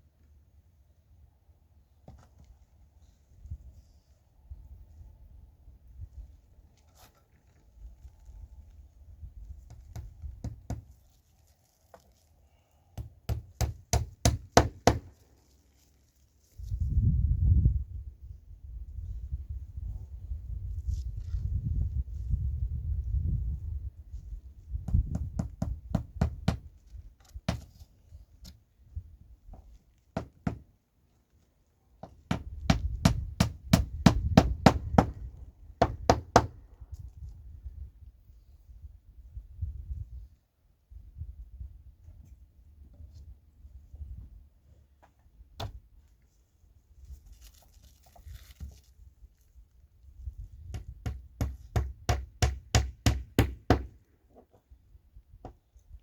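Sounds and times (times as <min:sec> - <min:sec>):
hammer driving nail into wood: 0:50.7 - 0:53.9.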